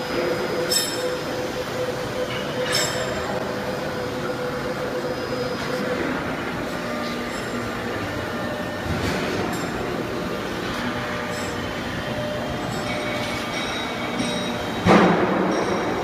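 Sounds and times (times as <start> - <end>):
factory machinery humming: 0.0 - 16.0
noisy background: 0.0 - 16.0.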